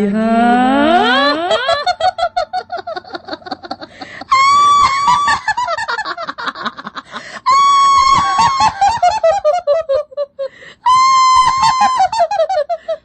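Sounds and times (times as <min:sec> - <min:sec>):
eerie cackling laughter: 0:00.8 - 0:13.0
shrill scream: 0:04.3 - 0:05.5, 0:07.5 - 0:08.8, 0:10.9 - 0:12.2.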